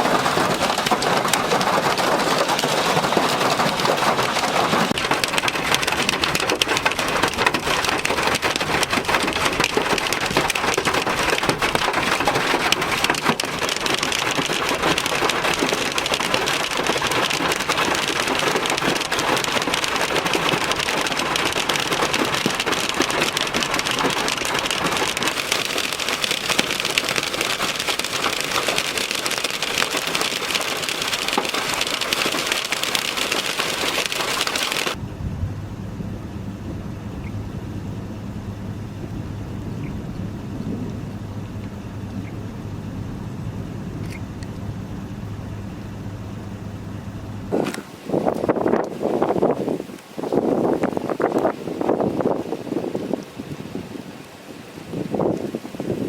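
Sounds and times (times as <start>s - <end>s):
hail and heavy rain pelting: 0.0s - 35.0s.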